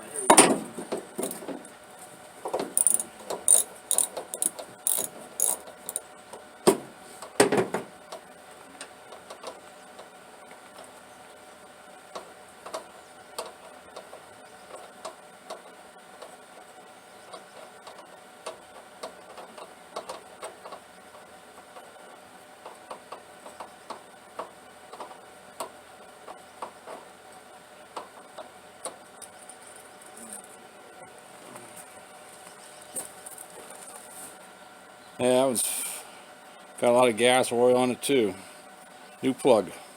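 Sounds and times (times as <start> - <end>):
ratchet wrench clicking: 1.2 - 1.4, 2.7 - 6.0.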